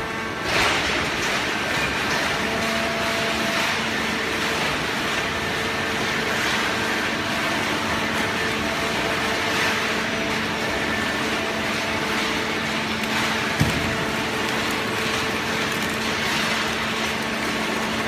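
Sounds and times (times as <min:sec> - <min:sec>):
hydraulic baler motor humming: 0:10.5 - 0:18.0.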